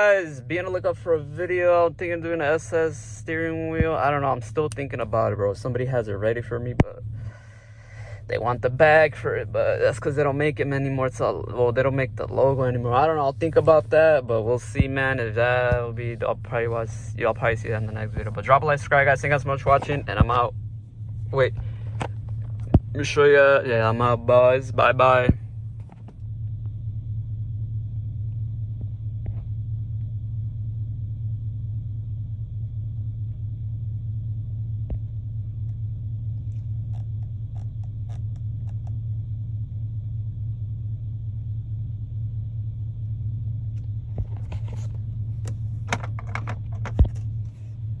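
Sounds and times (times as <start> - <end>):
pickup truck engine idling: 0.0 - 48.0
handling clicks and rustles: 13.0 - 23.2, 43.7 - 47.9.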